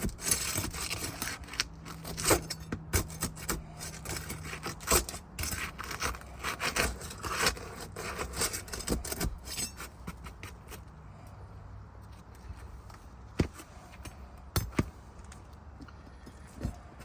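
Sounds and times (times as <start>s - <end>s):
tool scraping roof shingles: 0.0s - 10.9s.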